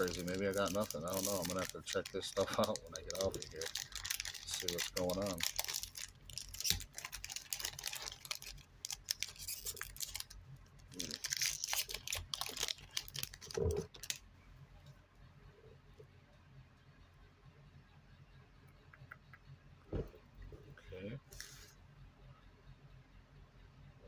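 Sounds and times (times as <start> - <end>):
wrapper tearing and crinkling: 0.0 - 14.2.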